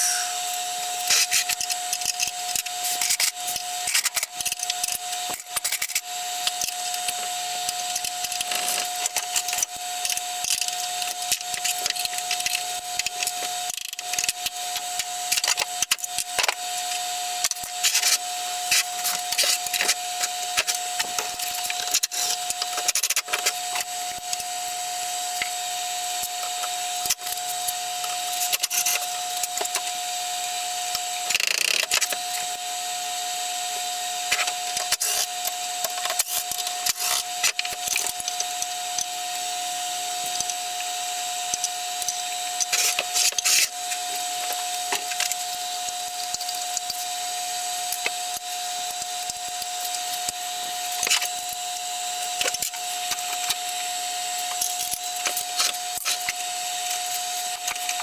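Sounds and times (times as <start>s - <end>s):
high-pitched hum: 0.0s - 1.4s.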